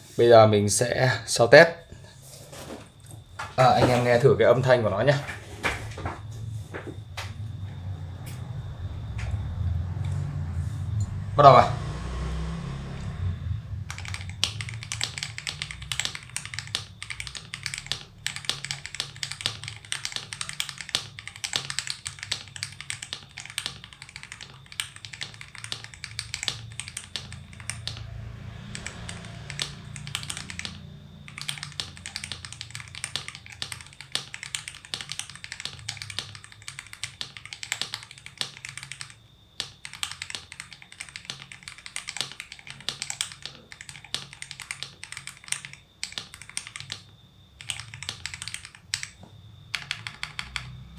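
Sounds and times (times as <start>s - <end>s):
mechanical keyboard typing: 13.9s - 50.9s.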